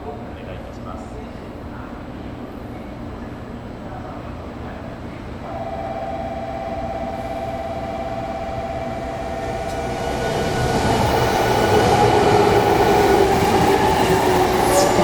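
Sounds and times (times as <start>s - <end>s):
electric train whine: 5.5s - 15.0s
train running noise: 7.1s - 15.0s.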